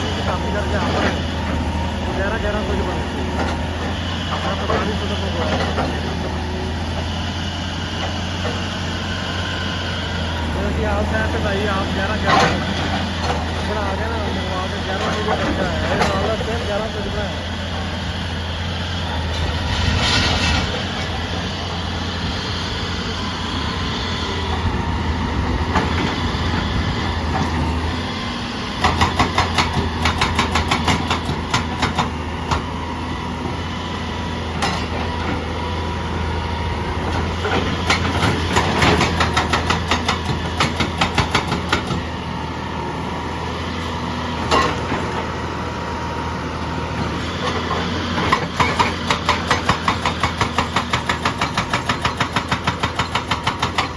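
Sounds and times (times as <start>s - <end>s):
diesel excavator engine running: 0.0s - 53.9s
hydraulic breaker hammering: 28.7s - 32.7s, 36.3s - 42.1s, 47.1s - 53.9s.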